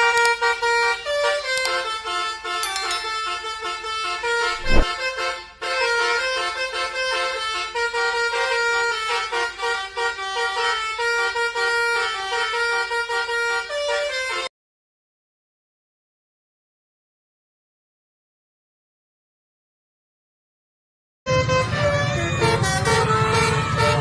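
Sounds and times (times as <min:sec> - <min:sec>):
multi-tone bus horn melody: 0:05.4 - 0:14.5, 0:21.3 - 0:24.0.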